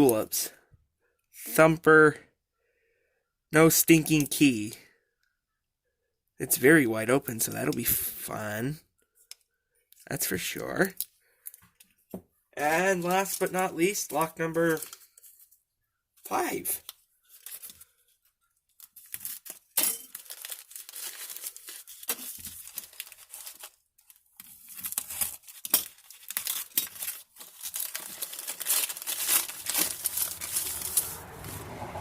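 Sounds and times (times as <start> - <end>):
packaging crinkling and tearing: 12.8 - 15.4, 16.3 - 18.1, 18.7 - 31.6.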